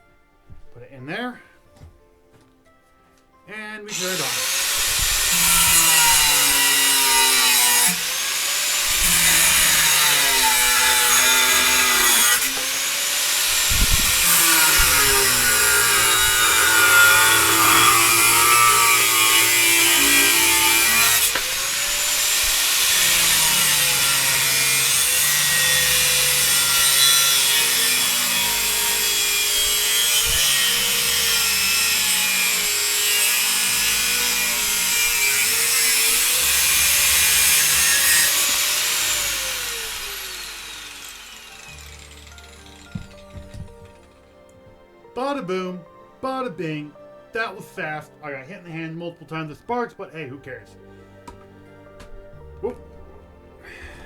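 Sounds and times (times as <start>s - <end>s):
angle grinder cutting steel: 3.9s - 44.3s.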